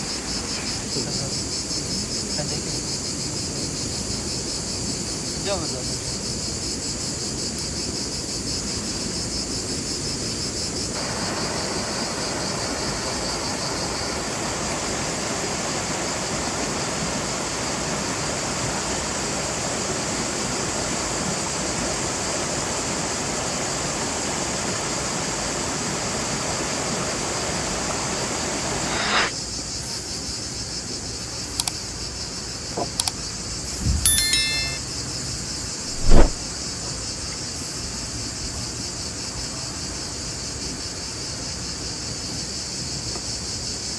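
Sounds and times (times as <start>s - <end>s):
rushing hiss: 0.0s - 19.2s, 25.8s - 31.7s
crickets trilling: 0.0s - 43.9s
light clinks: 33.9s - 35.0s.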